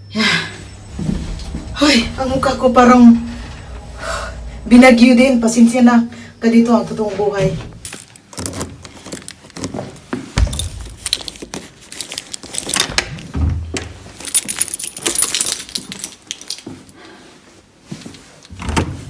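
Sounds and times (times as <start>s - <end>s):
keys jangling: 7.8s - 12.9s, 14.2s - 16.7s.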